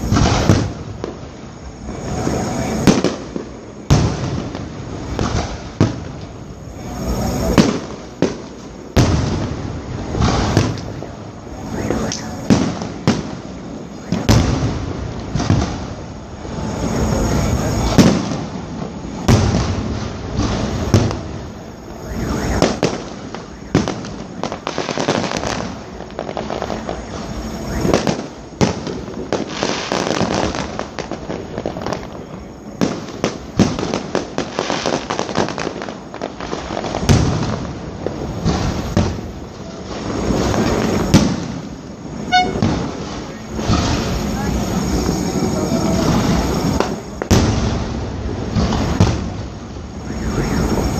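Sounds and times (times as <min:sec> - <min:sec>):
fireworks bursting and crackling: 0:00.0 - 0:50.9.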